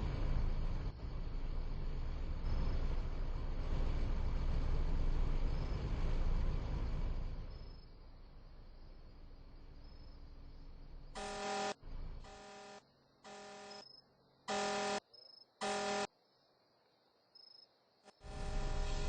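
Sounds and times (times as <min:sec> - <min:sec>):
car horn blasts: 0:11.2 - 0:13.8, 0:14.5 - 0:15.0, 0:15.6 - 0:16.1.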